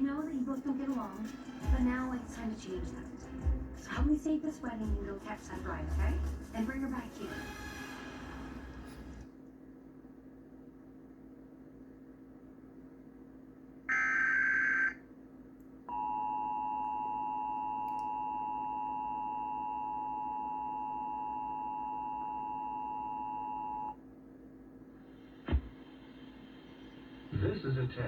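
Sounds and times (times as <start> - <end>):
two-tone attention signal: 13.9 - 15.0.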